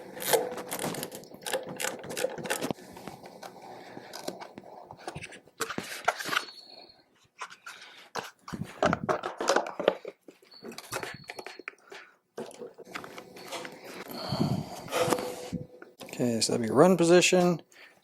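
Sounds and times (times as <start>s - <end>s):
tool scraping: 12.7s - 16.0s.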